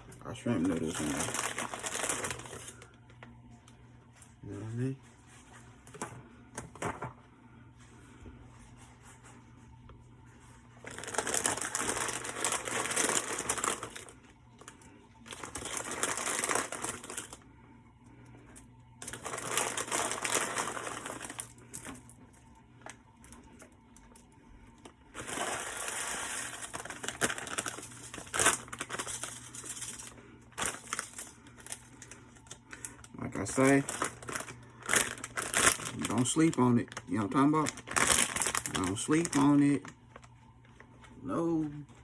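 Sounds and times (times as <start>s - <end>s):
plastic packets crinkling: 0.0s - 3.3s, 10.8s - 17.4s, 19.0s - 40.9s.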